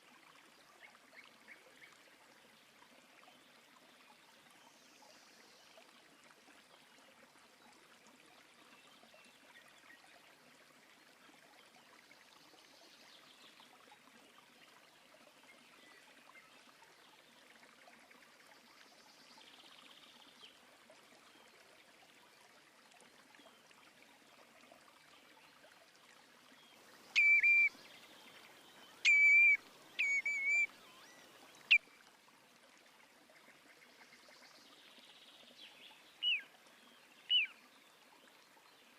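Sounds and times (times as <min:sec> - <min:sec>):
flowing river water: 0:00.0 - 0:38.9
bird call notes: 0:27.1 - 0:28.1, 0:28.8 - 0:31.8, 0:37.3 - 0:37.5.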